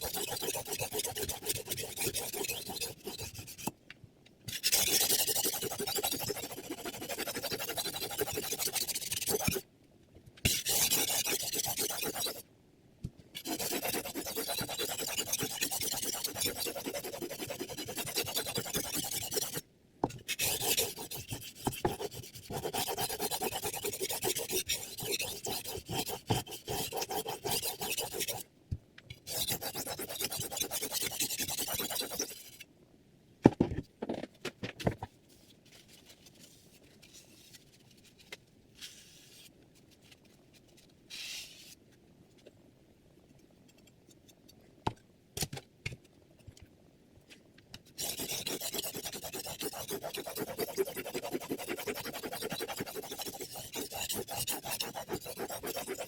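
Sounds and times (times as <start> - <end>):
knife rasping on sharpening plate: 0.0 - 3.7, 4.5 - 9.6, 10.5 - 12.4, 13.4 - 19.6, 20.3 - 28.4, 29.3 - 32.6, 48.0 - 56.0.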